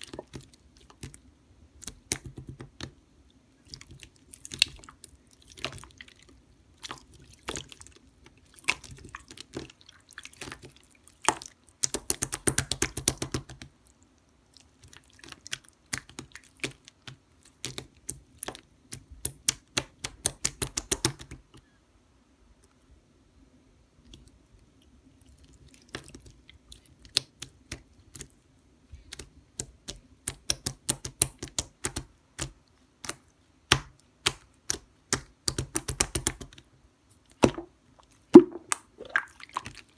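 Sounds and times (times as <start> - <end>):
slime squishing with sticky clicks: 1.8 - 3.0, 8.6 - 13.7, 14.9 - 21.5, 29.0 - 36.6, 37.3 - 39.8.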